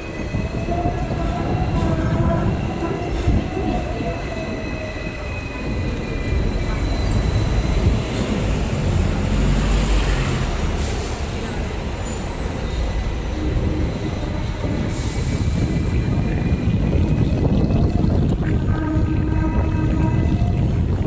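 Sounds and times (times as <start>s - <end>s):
heavy vehicle rumbling past: 6.7s - 16.0s.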